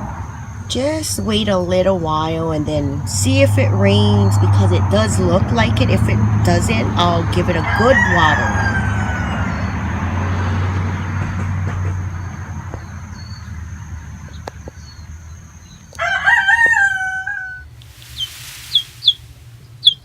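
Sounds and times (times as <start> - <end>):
rooster crowing: 7.6 - 9.9, 15.9 - 19.2
chick peeping: 17.4 - 20.0
rushing hiss: 17.7 - 20.0.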